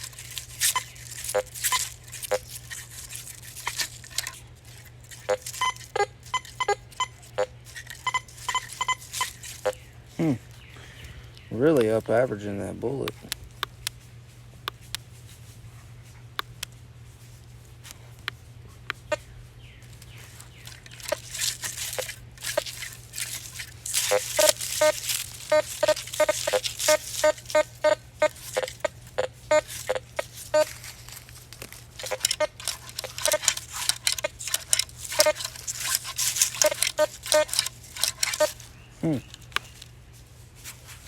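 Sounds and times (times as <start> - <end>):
metal detector beeps: 0.0 - 2.6, 3.6 - 9.9, 20.6 - 30.9, 32.0 - 39.8
rustling and scraping: 0.0 - 41.0
steady low hum: 0.0 - 41.0.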